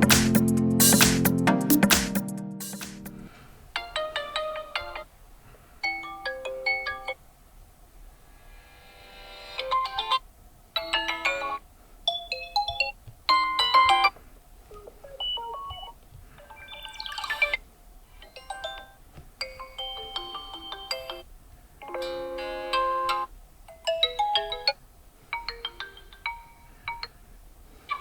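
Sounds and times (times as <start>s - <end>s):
electronic ringtone melodies: 0.0s - 3.1s, 5.8s - 7.2s, 15.1s - 17.5s, 18.3s - 21.2s, 25.4s - 27.1s.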